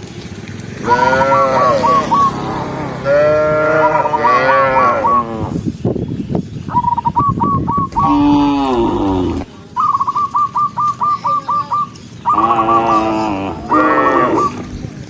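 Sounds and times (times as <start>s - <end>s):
cows mooing: 0.8s - 5.6s, 7.9s - 9.5s, 12.3s - 14.8s
bird calling: 0.8s - 15.0s.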